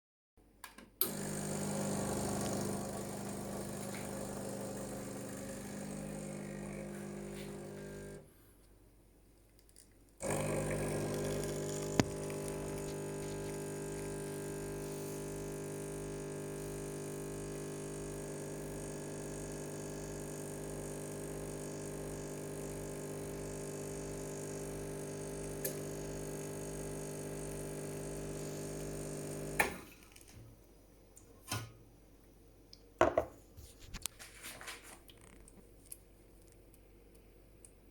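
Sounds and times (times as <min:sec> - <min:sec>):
coffee machine pump humming: 0:01.0 - 0:08.3, 0:10.2 - 0:29.9.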